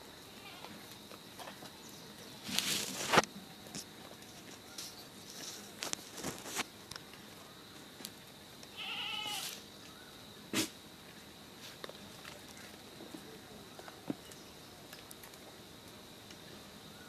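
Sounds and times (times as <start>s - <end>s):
goat bleating: 8.7s - 9.5s.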